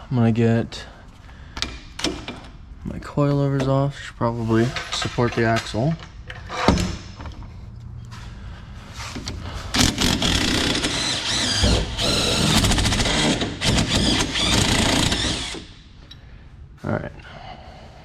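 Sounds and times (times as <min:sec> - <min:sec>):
impact wrench hammering: 0:09.8 - 0:15.8.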